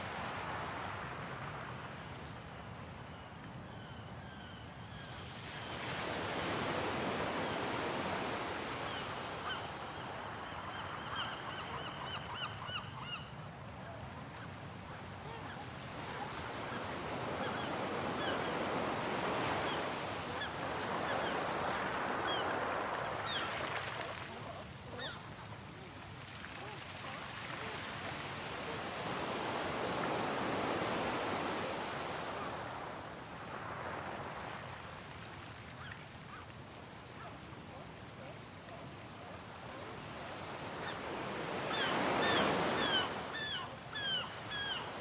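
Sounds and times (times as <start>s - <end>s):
ocean waves washing on shore: 14.1s - 45.0s.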